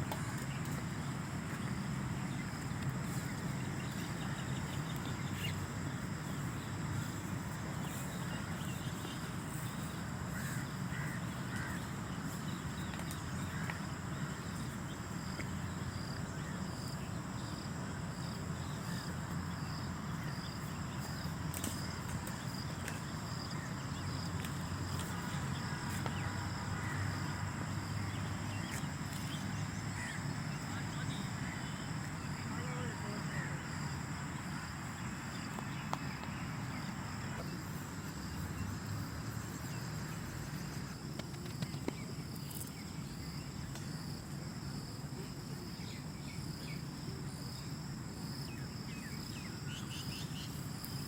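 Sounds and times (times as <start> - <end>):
birds calling: 0.0 - 17.5, 18.3 - 41.0
crow cawing: 10.4 - 11.8.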